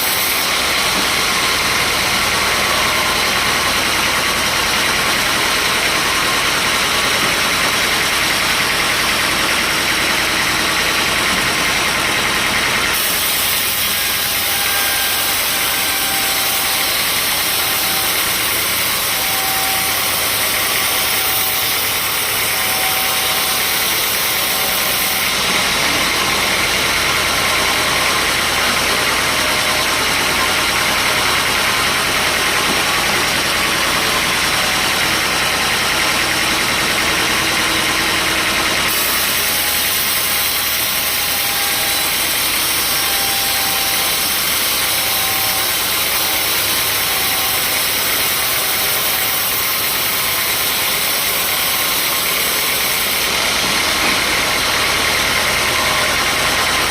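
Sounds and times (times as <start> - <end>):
sawmill machinery drone: 0.0 - 56.9.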